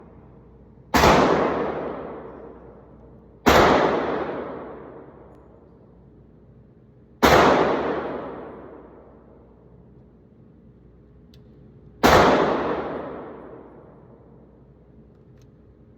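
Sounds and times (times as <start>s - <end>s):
pistol shots: 0.9s - 5.3s, 7.2s - 9.2s, 12.0s - 14.0s.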